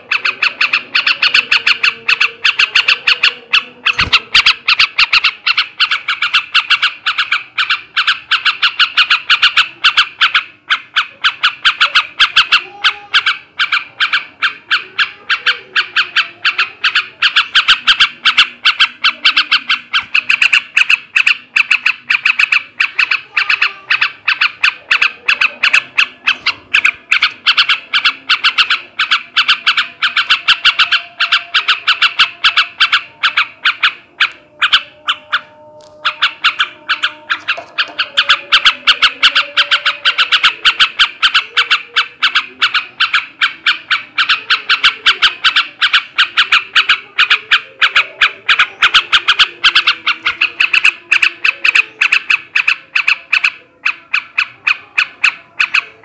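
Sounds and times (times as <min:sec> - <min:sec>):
bird chattering call: 0:00.0 - 0:56.0.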